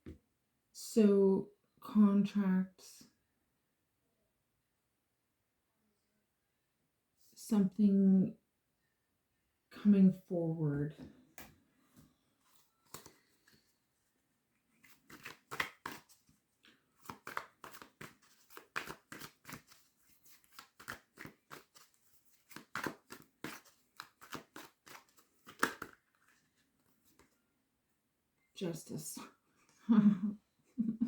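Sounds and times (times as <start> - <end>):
cards being shuffled: 12.5 - 13.6, 14.7 - 27.4.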